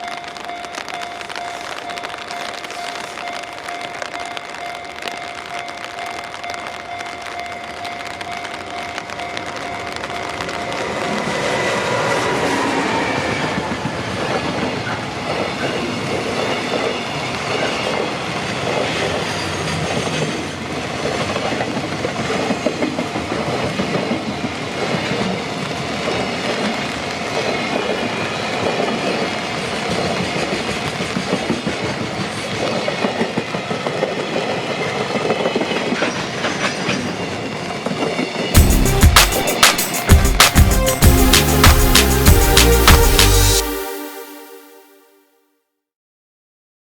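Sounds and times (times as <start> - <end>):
music: 38.6 - 45.4.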